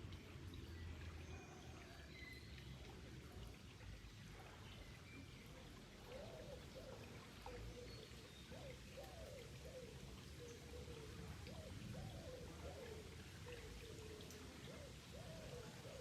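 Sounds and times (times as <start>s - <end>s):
faint running water: 0.0s - 16.0s
low hooting or cooing: 6.1s - 7.9s, 8.5s - 16.0s.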